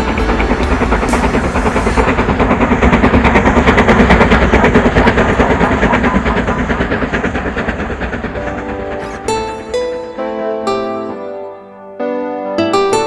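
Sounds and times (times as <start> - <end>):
train clattering at speed: 0.0 - 11.0.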